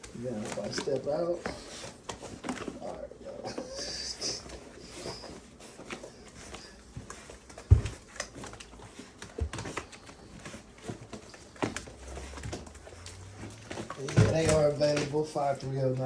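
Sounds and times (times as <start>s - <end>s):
puppies scuffling: 0.0s - 16.0s
paw taps and knocks: 3.5s - 15.2s.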